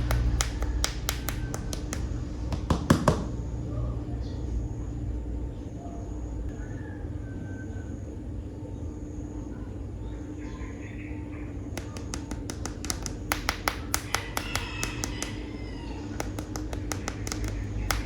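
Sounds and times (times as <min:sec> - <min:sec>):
sharp clicking taps: 0:00.0 - 0:03.3, 0:11.8 - 0:15.5, 0:16.1 - 0:18.0
steady low hum: 0:00.0 - 0:18.0.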